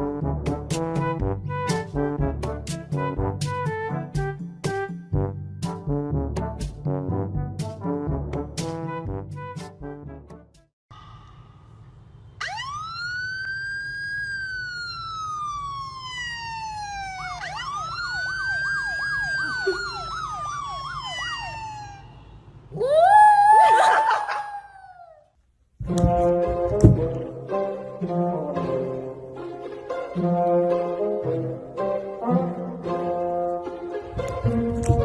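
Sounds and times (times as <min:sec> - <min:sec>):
parrot mimicking a siren: 0:18.8 - 0:22.2.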